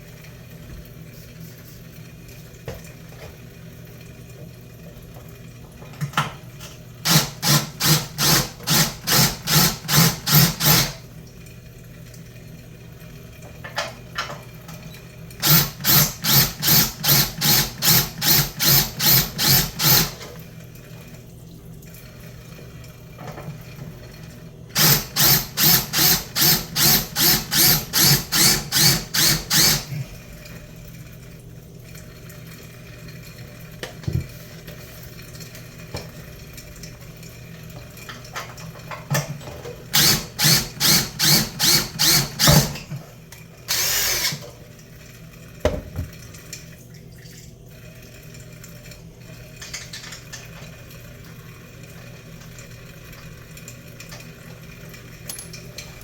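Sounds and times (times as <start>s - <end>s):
power drill driving a screw: 7.1s - 11.0s, 15.4s - 20.2s, 24.8s - 29.9s, 40.0s - 42.8s, 43.7s - 44.4s.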